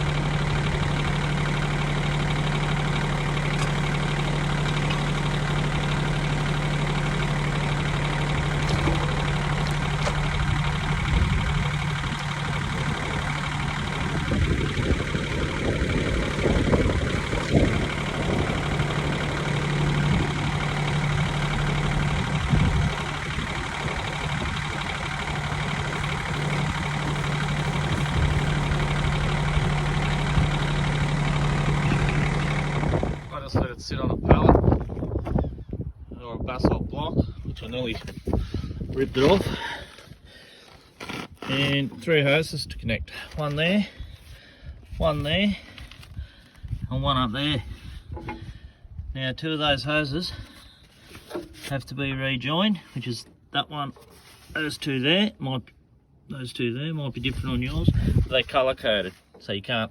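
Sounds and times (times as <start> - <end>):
clunks and knocks: 0.0 - 33.3, 48.0 - 48.6
diesel tractor engine idling: 0.0 - 36.1, 37.1 - 56.2, 56.8 - 59.9.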